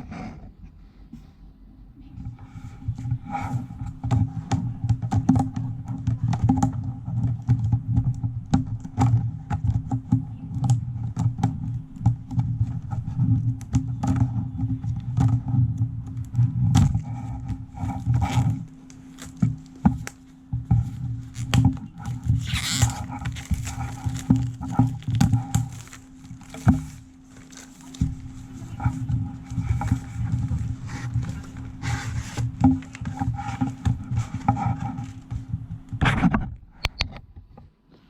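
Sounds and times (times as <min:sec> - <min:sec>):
steady low hum: 0:00.0 - 0:37.8
hands handling packaging: 0:16.1 - 0:36.0
rustling scrape: 0:16.4 - 0:36.4.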